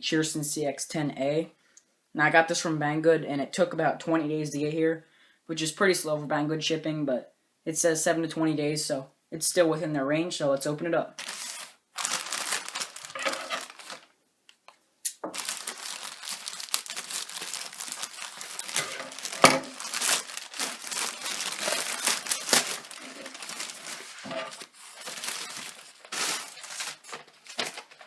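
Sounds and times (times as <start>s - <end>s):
packaging rustling and crackling: 11.2s - 28.0s.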